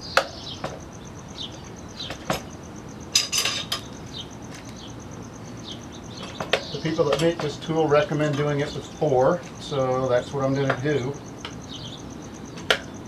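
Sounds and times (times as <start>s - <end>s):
metal tire spoons clinking: 3.2s - 4.0s, 6.2s - 8.9s.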